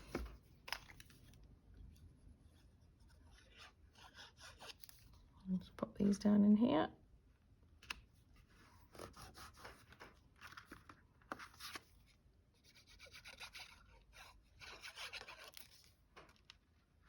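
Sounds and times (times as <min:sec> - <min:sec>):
paper and card rustling: 0:00.0 - 0:01.4, 0:07.8 - 0:12.2, 0:12.8 - 0:17.0.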